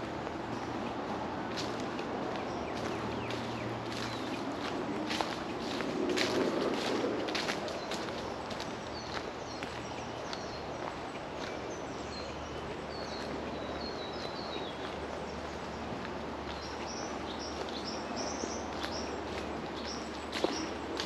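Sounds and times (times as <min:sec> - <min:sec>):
steady rushing noise: 0:00.0 - 0:09.8
songbirds chirping: 0:00.0 - 0:21.0.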